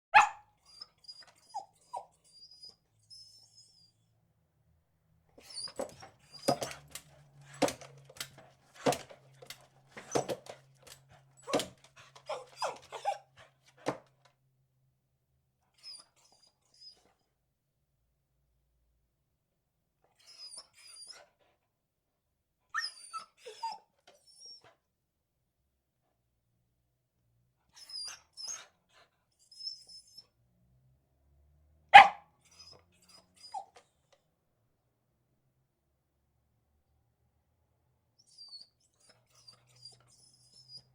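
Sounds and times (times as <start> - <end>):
dog barking: 0.1 - 0.5, 31.9 - 32.3
faint high squeaks: 5.4 - 13.2, 38.2 - 40.9.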